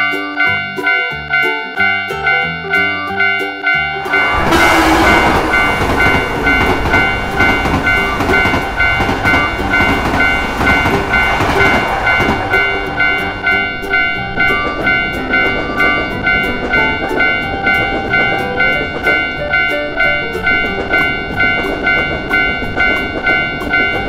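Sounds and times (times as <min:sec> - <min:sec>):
crossing warning bell ringing: 0:00.0 - 0:24.0
train rumble and wheel noise: 0:00.0 - 0:24.0.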